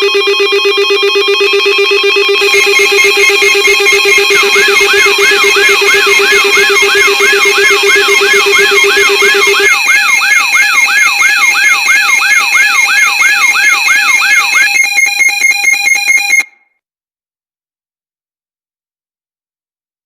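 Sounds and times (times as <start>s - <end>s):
steady high beeping tones: 0.0s - 16.5s
sweeping siren-like tone: 0.0s - 16.5s
fast stuttering electronic pulse: 1.3s - 14.5s.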